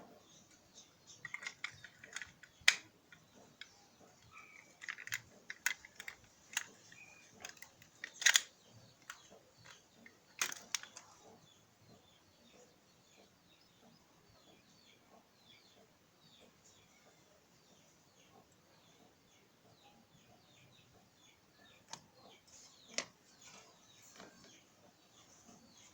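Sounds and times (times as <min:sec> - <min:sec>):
clicks of small hard parts handled: 0:01.2 - 0:11.1.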